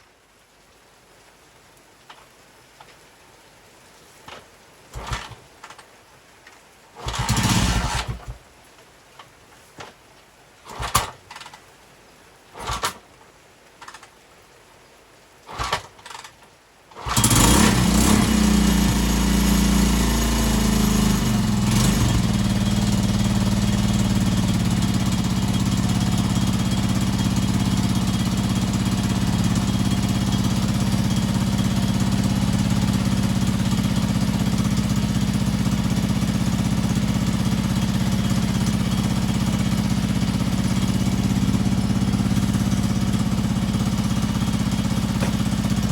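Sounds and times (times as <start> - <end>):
motorcycle engine starting and running: 4.3 - 5.8, 7.0 - 8.5, 10.7 - 11.6, 12.6 - 13.0, 13.8 - 14.1, 15.5 - 45.9
short knocks: 45.1 - 45.6.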